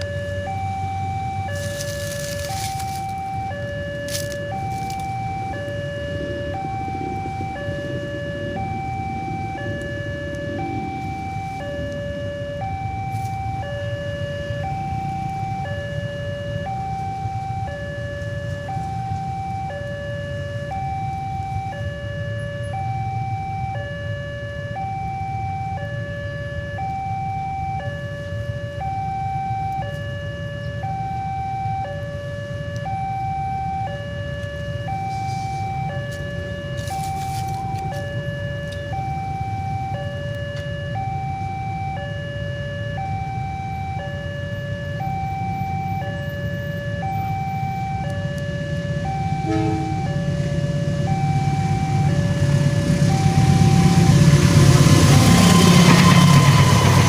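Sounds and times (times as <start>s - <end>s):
low rumble: 0.0s - 16.3s, 48.9s - 57.0s
two-tone warning alarm: 0.0s - 57.0s.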